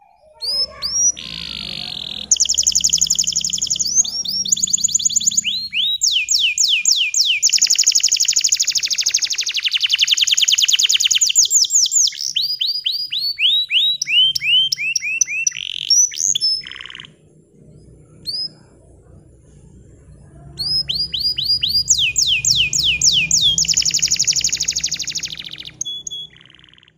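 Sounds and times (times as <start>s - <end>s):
canary singing trills: 0.0s - 26.9s.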